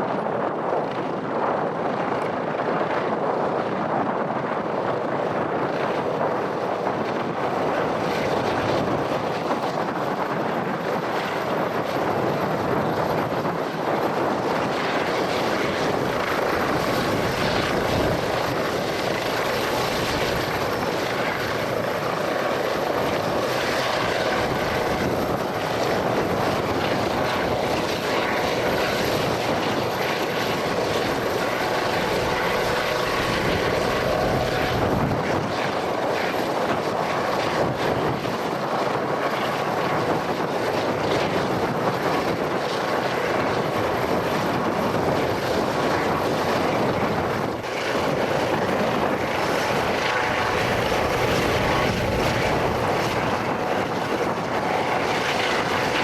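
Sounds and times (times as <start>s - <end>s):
aircraft engine rushing noise: 14.3s - 36.0s, 44.4s - 56.0s.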